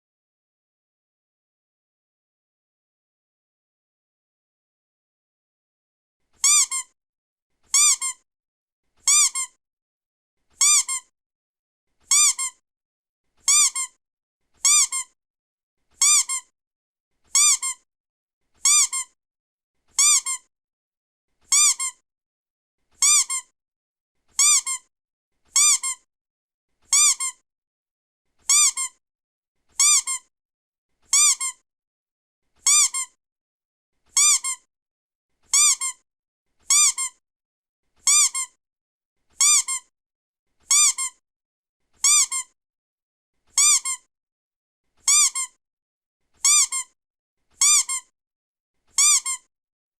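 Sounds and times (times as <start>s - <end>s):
rubber duck toy squeaking: 6.4s - 7.0s, 7.7s - 8.2s, 9.0s - 9.6s, 10.6s - 11.1s, 12.0s - 12.6s, 13.4s - 14.0s, 14.6s - 15.2s, 16.0s - 16.5s, 17.3s - 17.8s, 18.6s - 19.2s, 19.9s - 20.5s, 21.5s - 22.0s, 23.0s - 23.5s, 24.3s - 24.9s, 25.5s - 26.1s, 26.9s - 27.4s, 28.4s - 29.0s, 29.8s - 30.3s, 31.1s - 31.6s, 32.6s - 33.2s, 34.1s - 34.7s, 35.5s - 36.0s, 36.6s - 37.2s, 38.0s - 38.6s, 39.4s - 39.9s, 40.6s - 41.2s, 42.0s - 42.6s, 43.5s - 44.1s, 45.0s - 45.6s, 46.4s - 47.0s, 47.6s - 48.1s, 48.9s - 49.5s.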